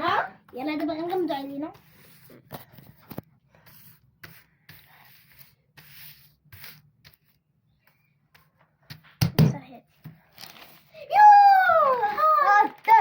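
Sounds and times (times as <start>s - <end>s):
papers shuffled by hand: 10.1s - 13.0s.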